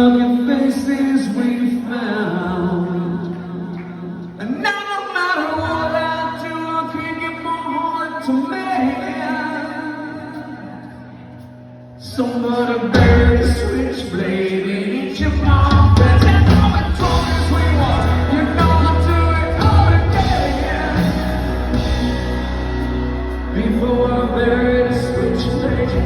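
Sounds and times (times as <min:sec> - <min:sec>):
lead singer singing: 0:00.0 - 0:26.0
live rock band playing: 0:10.4 - 0:13.9, 0:15.2 - 0:26.0.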